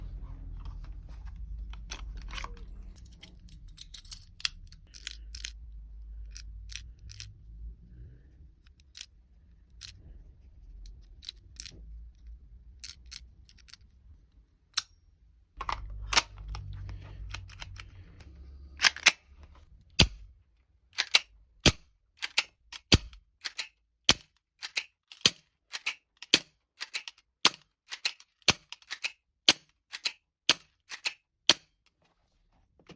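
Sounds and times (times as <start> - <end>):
low rumble: 0.0 - 13.4, 15.6 - 20.5.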